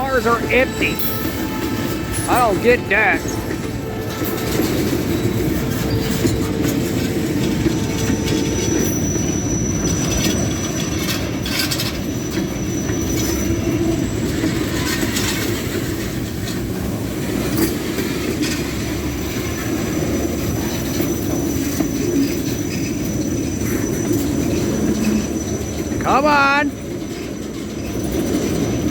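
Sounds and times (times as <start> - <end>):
freight cars rumbling: 0.0 - 28.9
high wheel squeal: 7.4 - 14.3
wheels clacking over rail joints: 26.8 - 28.9.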